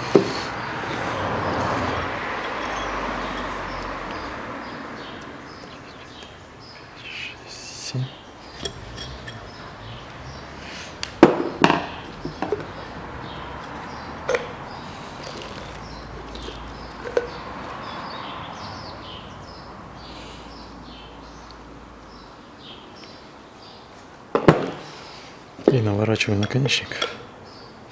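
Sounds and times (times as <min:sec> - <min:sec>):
metal steering parts clinking: 0:01.4 - 0:04.3, 0:08.4 - 0:10.4, 0:11.6 - 0:12.8.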